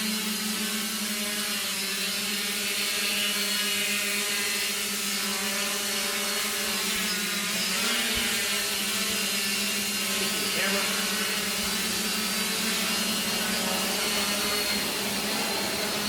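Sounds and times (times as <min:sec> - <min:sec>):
drone hovering hum: 0:00.0 - 0:16.0.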